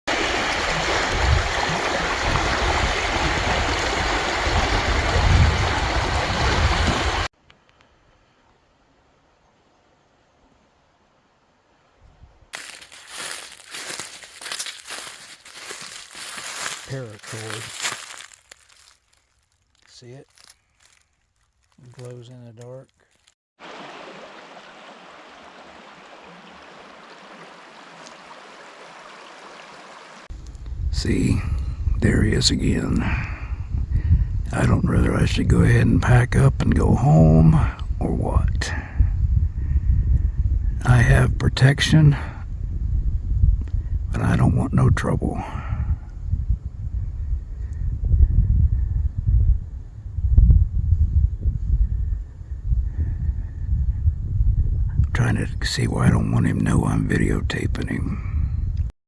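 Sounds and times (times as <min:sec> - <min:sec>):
running water rushing: 0:00.1 - 0:07.3, 0:23.6 - 0:30.3.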